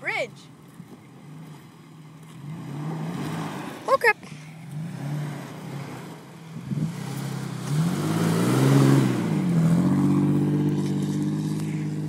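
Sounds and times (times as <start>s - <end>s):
car engine revving: 0.7s - 12.0s.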